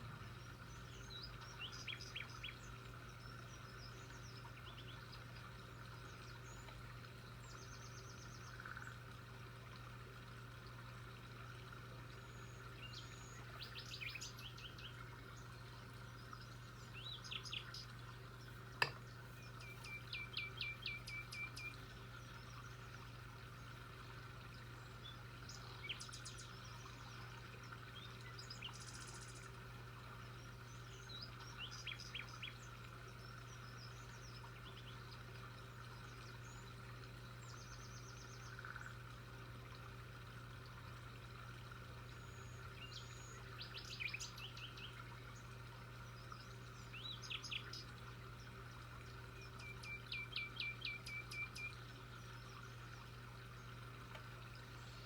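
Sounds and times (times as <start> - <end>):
faint steady hum: 0.0 - 55.0
birds chirping: 12.2 - 23.0, 46.0 - 48.6, 49.3 - 55.0.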